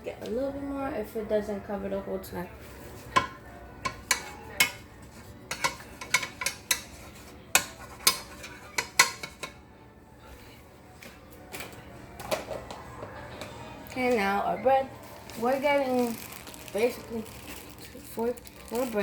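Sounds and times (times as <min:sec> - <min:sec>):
metal utensil clinking on pan: 0:05.5 - 0:06.9, 0:07.5 - 0:09.6.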